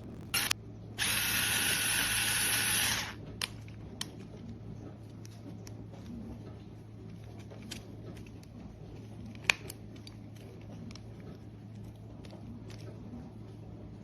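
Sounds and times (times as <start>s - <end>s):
electric screwdriver running: 0.2s - 3.2s.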